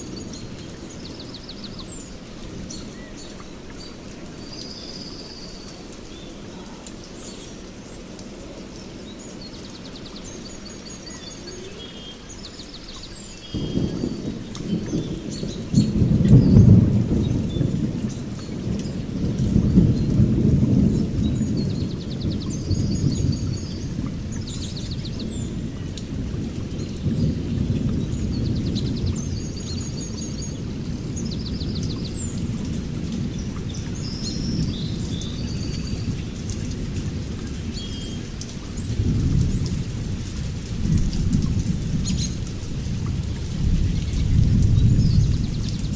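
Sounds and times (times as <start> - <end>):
birds chirping: 0.0 - 26.0
low rumble like thunder: 13.6 - 45.9.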